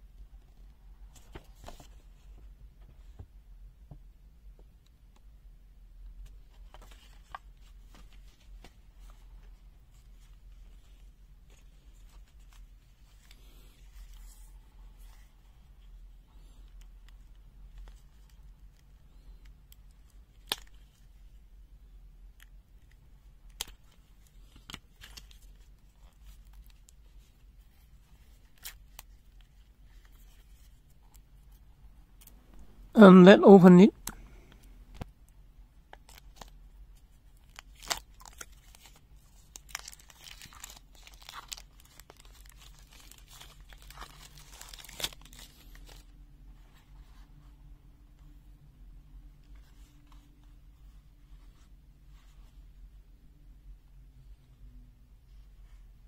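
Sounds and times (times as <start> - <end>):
faint clicks and rustles: 22.3 - 32.6.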